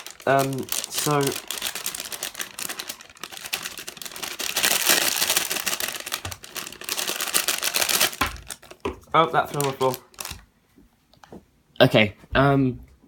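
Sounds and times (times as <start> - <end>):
packaging crinkling: 0.0 - 10.5.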